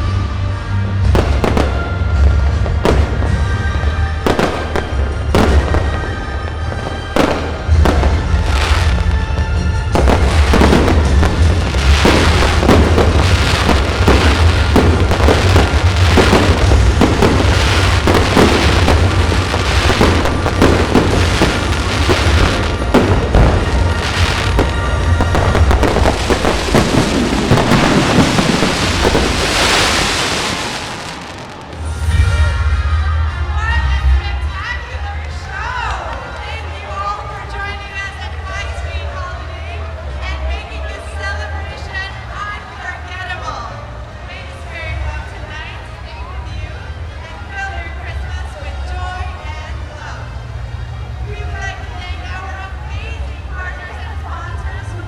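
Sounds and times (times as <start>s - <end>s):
fireworks bangs and crackling: 0.0s - 33.1s.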